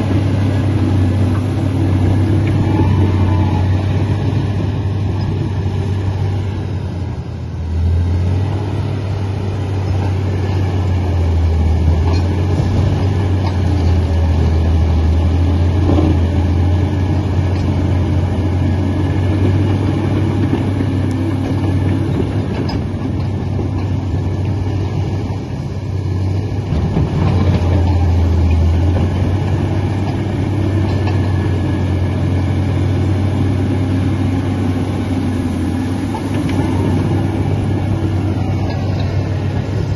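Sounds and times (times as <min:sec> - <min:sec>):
bulldozer diesel engine droning: 0:00.0 - 0:39.9.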